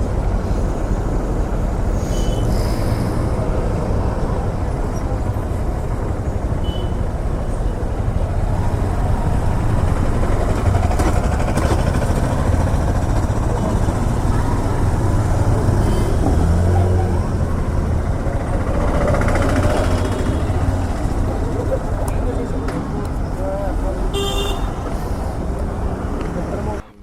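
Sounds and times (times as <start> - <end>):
road noise: 0.0 - 27.0
motorcycle engine running: 4.5 - 22.4.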